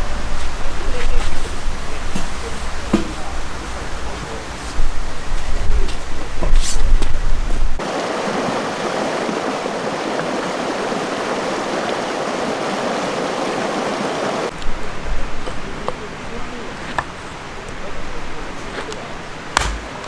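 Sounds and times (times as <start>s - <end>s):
river water rushing: 7.8s - 14.6s, 19.3s - 20.0s.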